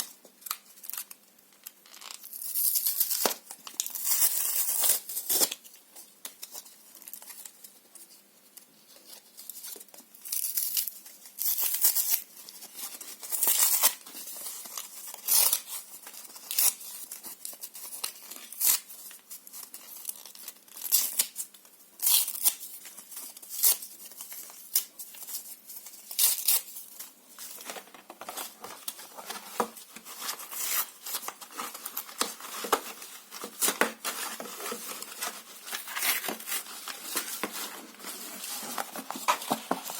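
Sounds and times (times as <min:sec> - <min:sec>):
paper crinkling: 0:22.4 - 0:39.9
paper and cardboard tearing: 0:29.2 - 0:39.9.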